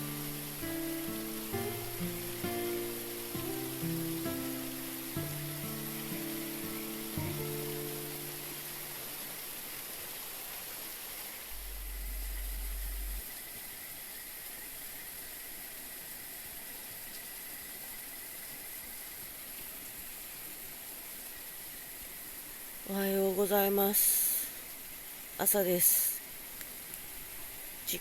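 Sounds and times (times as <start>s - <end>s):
outdoor hiss: 0.0s - 28.0s
faint high steady tone: 11.5s - 13.3s
low rumble: 11.5s - 13.3s.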